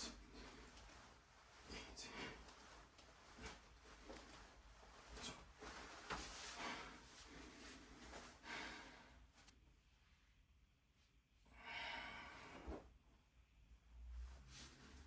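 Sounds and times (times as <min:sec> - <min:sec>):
person breathing softly: 0:00.0 - 0:09.5, 0:11.5 - 0:12.9.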